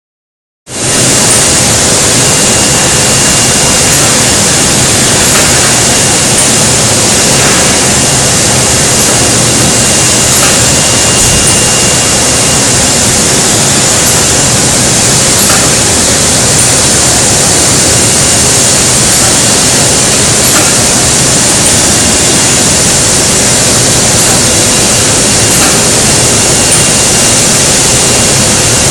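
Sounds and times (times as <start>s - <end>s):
packaging machine mechanical rush: 0.8s - 28.9s.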